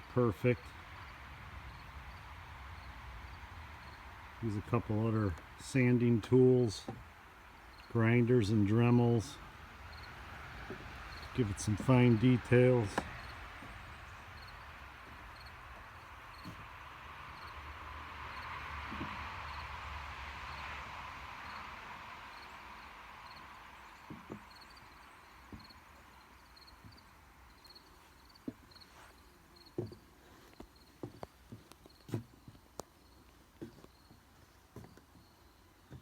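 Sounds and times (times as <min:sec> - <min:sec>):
soft rushing hiss: 0:00.2 - 0:36.0
insect chirping: 0:02.8 - 0:04.0, 0:07.6 - 0:07.9, 0:09.9 - 0:10.2, 0:11.0 - 0:11.3, 0:13.1 - 0:13.4, 0:14.1 - 0:16.6, 0:17.3 - 0:17.7, 0:18.3 - 0:19.7, 0:21.4 - 0:31.0.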